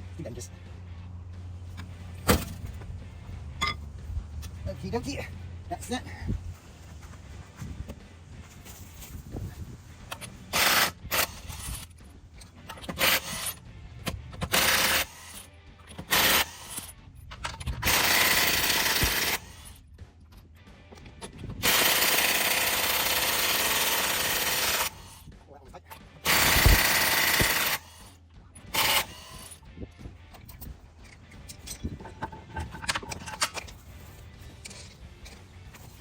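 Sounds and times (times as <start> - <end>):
impact wrench running: 10.0 - 11.9, 12.7 - 16.9, 17.5 - 19.8, 21.6 - 25.3, 26.2 - 28.1, 28.7 - 29.6.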